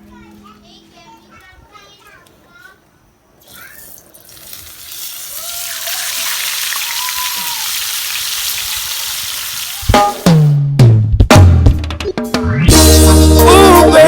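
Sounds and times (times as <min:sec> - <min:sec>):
oil sizzling in deep fryer: 0:03.5 - 0:10.6.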